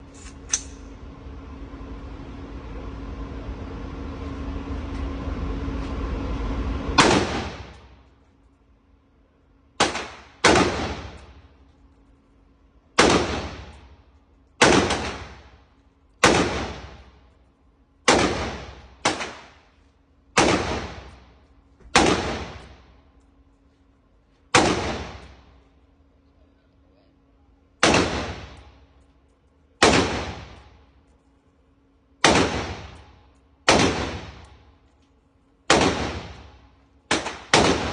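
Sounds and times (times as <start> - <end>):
rifle firing single shots: 27.8 - 28.6, 29.8 - 30.6, 32.2 - 33.0, 33.7 - 34.4, 35.7 - 36.5, 37.1 - 37.9.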